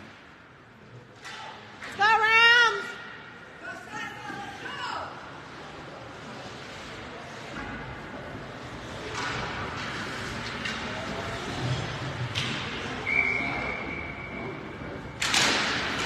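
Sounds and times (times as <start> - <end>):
referee whistle: 13.0 - 14.5.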